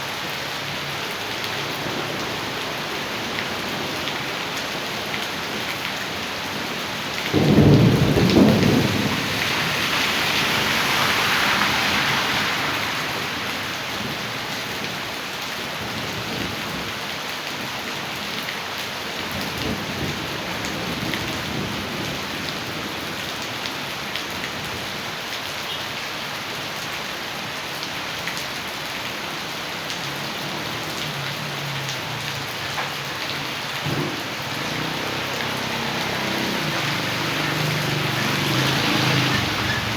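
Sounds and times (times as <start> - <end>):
heavy rain falling: 0.0 - 39.9
thunder clap and rumble: 7.2 - 11.3, 32.2 - 39.9.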